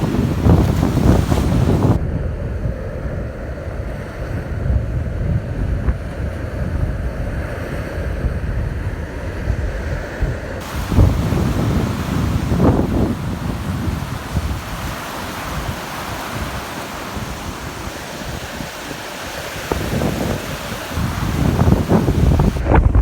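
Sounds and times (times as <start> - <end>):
surf washing onto beach: 0.0 - 2.0, 10.6 - 23.0
wind buffeting microphone: 0.0 - 23.0.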